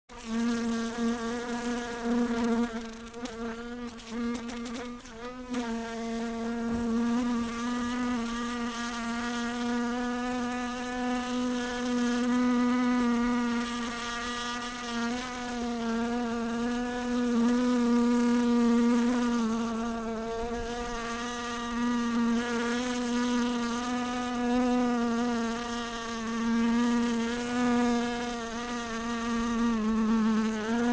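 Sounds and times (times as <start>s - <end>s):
fly buzzing in flight: 0.1s - 30.9s.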